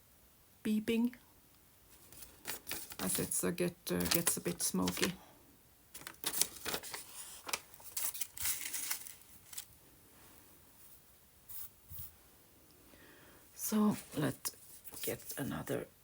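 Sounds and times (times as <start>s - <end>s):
paper rustling: 1.9s - 5.2s, 5.9s - 9.8s.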